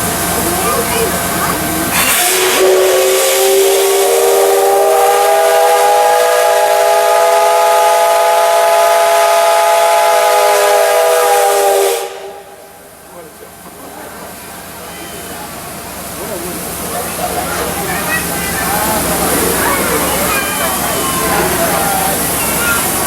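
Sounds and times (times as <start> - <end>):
steam hissing: 0.0 - 23.0
steam whistle blast: 2.0 - 12.6.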